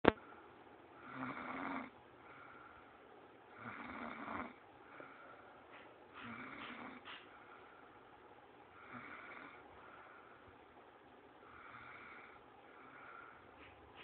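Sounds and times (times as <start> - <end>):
person snoring: 1.0 - 2.0, 3.6 - 4.6.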